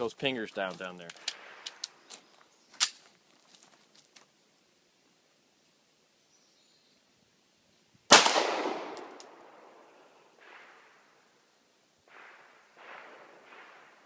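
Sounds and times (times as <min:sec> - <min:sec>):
pistol shot: 0:08.1 - 0:09.3, 0:12.1 - 0:14.0.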